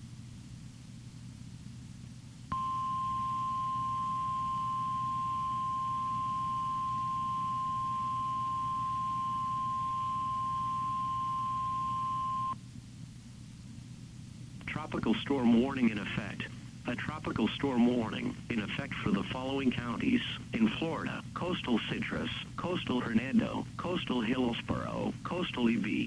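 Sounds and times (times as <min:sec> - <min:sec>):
low receiver hum: 0:00.0 - 0:26.0
piercing alarm tone: 0:02.5 - 0:12.6.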